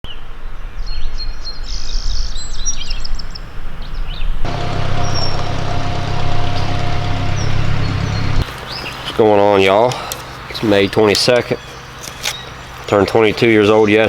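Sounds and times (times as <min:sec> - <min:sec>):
small birds chirping: 0:00.9 - 0:14.0
low hum: 0:04.5 - 0:08.4
low rumble: 0:04.5 - 0:08.4.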